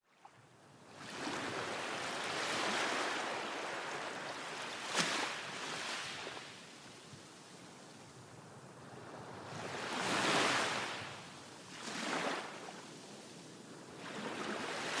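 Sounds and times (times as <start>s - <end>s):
surf washing on beach: 0.9s - 15.0s
wave splash: 4.8s - 6.4s.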